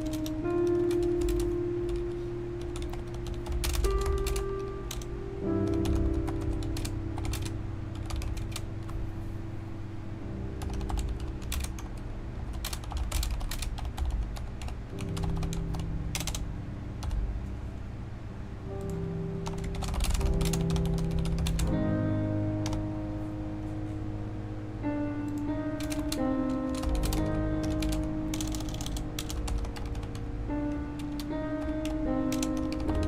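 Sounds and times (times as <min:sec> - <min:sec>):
mechanical keyboard clicking: 0:00.0 - 0:09.0, 0:10.6 - 0:16.4, 0:17.0 - 0:17.2, 0:18.8 - 0:21.8, 0:22.6 - 0:22.8, 0:25.3 - 0:33.0
music of slow held chords: 0:00.0 - 0:33.0.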